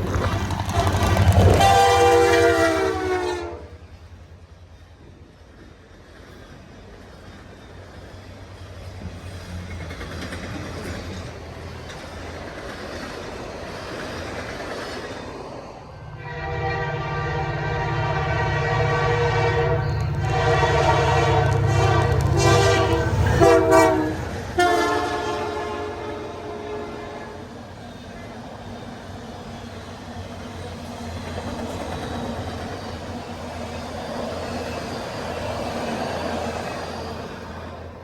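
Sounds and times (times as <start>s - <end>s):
diesel locomotive rumble: 0.0s - 38.0s
locomotive air horn: 0.6s - 3.8s, 16.1s - 27.5s.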